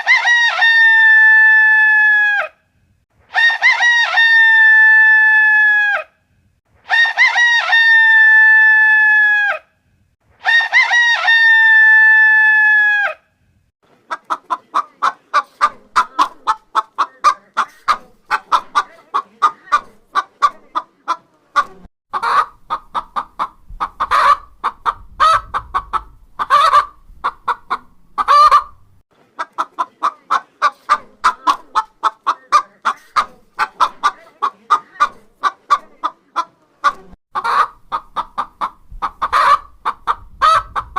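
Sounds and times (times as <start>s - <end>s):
chickens squawking: 0.0s - 2.5s, 3.3s - 6.0s, 6.9s - 9.6s, 10.4s - 13.2s, 14.1s - 40.9s
chickens clucking: 13.9s - 40.9s.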